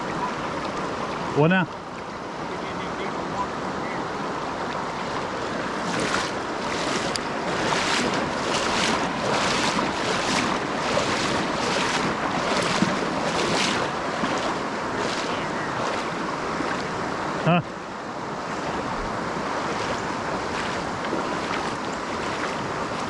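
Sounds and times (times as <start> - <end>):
flowing river water: 0.0 - 23.0
regular splashing swishes: 5.7 - 23.0.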